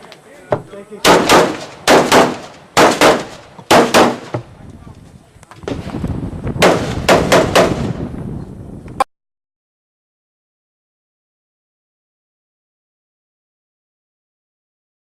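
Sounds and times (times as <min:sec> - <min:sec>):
rifle shots: 0:01.0 - 0:04.4, 0:06.6 - 0:08.0.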